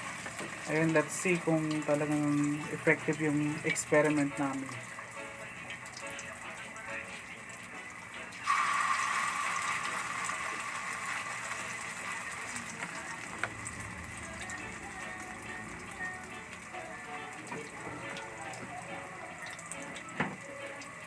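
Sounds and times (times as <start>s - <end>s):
cooking pan hissing: 0.0s - 3.1s, 6.7s - 19.7s.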